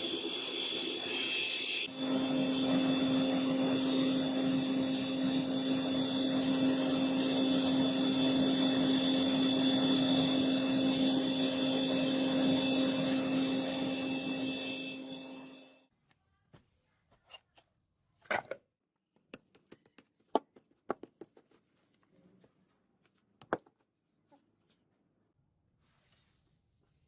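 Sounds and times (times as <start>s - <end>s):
hiss of abrasion: 0.0s - 2.0s
power tool motor whining: 0.0s - 15.8s.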